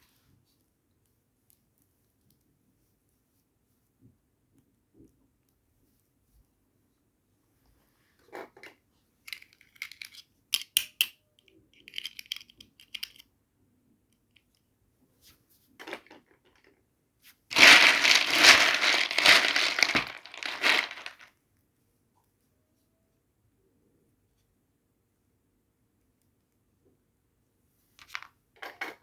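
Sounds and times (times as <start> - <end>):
packaging crinkling and tearing: 17.5 - 21.2.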